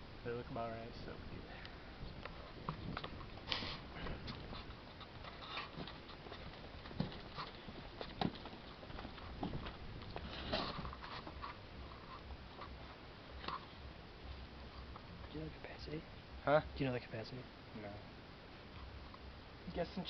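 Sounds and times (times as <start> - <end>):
scraping rustles: 2.0 - 15.3.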